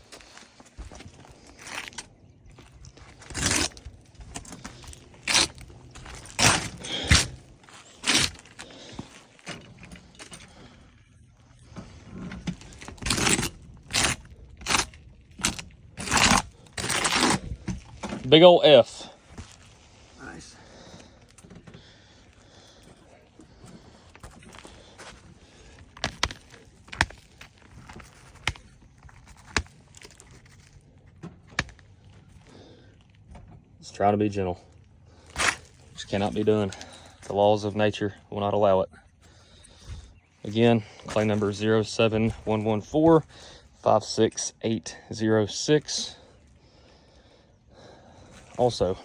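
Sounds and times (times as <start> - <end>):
scrapes on asphalt shingles: 0.0 - 10.9, 11.5 - 33.3, 35.1 - 37.6
knocks and cracks on shingle roof: 2.7 - 9.8, 23.5 - 33.5.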